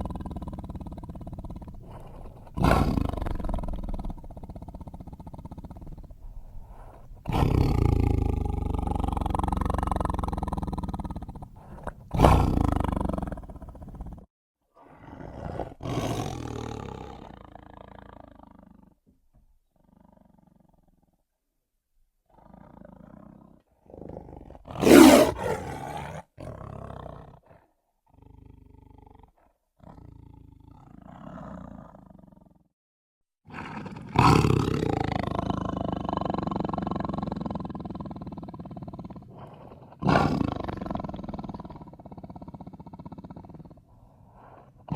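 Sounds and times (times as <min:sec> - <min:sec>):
tiger roaring: 0:00.0 - 0:14.2, 0:14.8 - 0:18.2, 0:22.3 - 0:29.1, 0:39.1 - 0:44.9.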